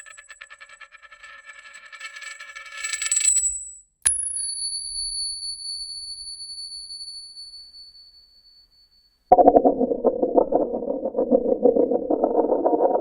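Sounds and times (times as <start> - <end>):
low rattling noise: 9.3 - 13.0.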